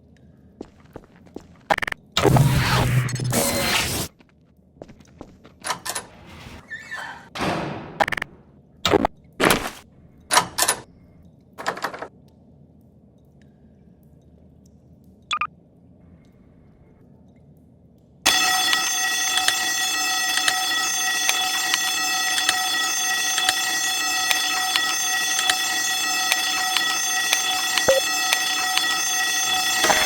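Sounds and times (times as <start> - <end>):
sharp alarm chirp: 18.3 - 30.0
shrill door alarm tone: 18.3 - 30.0.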